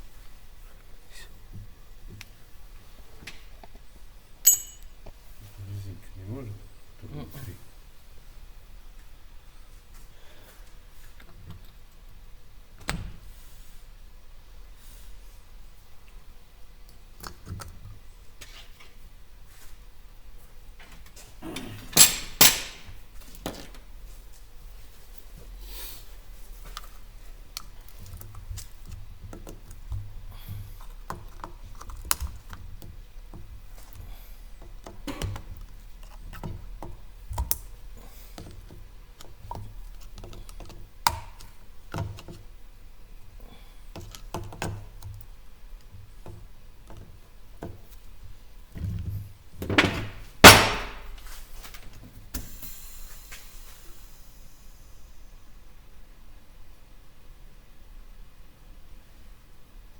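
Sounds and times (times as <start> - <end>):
tools clicking and knocking: 4.4 - 4.9, 21.9 - 22.9
faint hiss: 24.8 - 27.4, 51.1 - 56.8.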